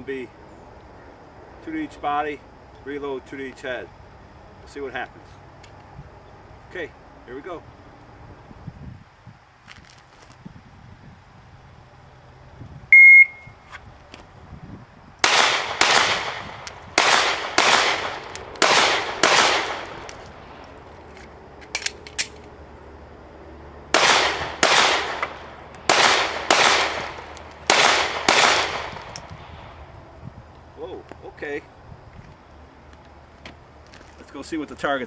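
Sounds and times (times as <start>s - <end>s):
shot timer beep: 12.9s - 13.6s
pistol shots: 15.2s - 20.2s, 23.9s - 29.2s
magazine reload clicks: 17.6s - 22.5s.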